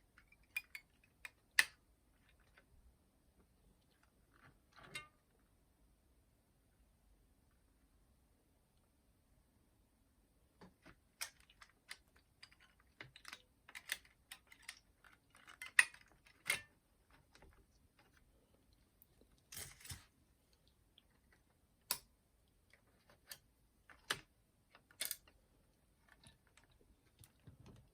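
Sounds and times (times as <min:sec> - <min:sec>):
hands handling small parts clicking: 0:10.8 - 0:18.2, 0:22.7 - 0:25.4.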